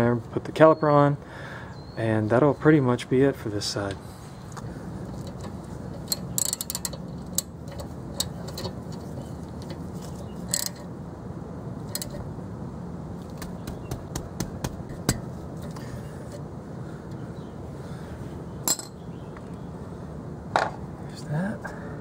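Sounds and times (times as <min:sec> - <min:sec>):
ratchet wrench clicking: 0:05.2 - 0:09.8, 0:10.5 - 0:10.8, 0:11.9 - 0:12.2.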